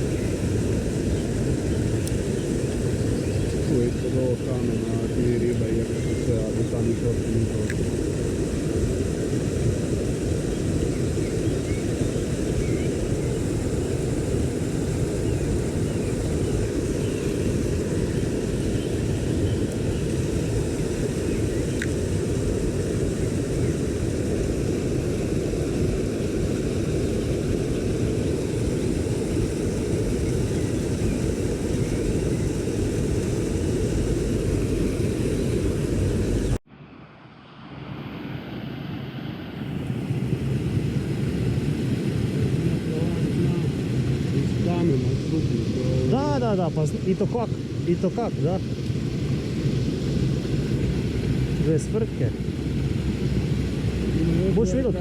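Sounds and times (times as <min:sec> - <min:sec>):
stream water rushing: 0:40.4 - 0:55.0.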